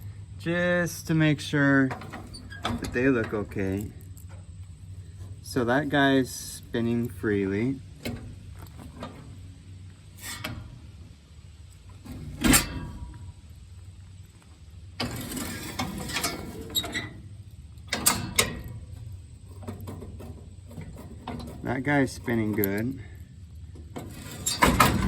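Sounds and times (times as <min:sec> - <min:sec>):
metal clunks and rattling: 0:01.7 - 0:06.0, 0:07.9 - 0:13.6, 0:14.9 - 0:25.0
metal clicks: 0:14.3 - 0:25.0.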